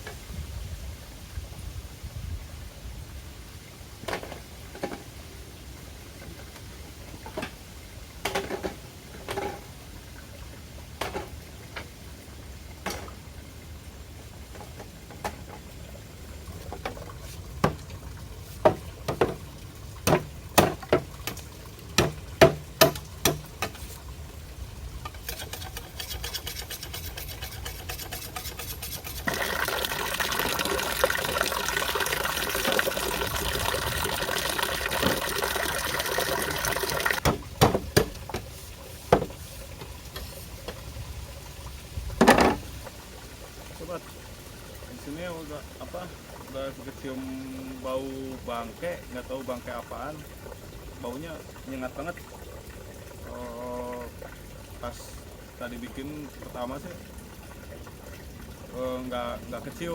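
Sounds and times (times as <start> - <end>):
water flowing: 2.5 - 59.9
sharp knocks: 20.0 - 21.4, 22.0 - 23.8, 37.2 - 38.5.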